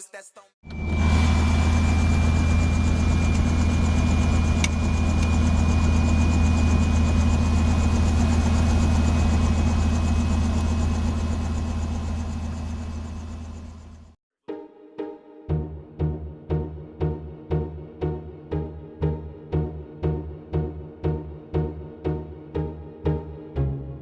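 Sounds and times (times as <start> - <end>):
aircraft engine drone: 0.6 - 14.2
thin steady whine: 0.6 - 14.2.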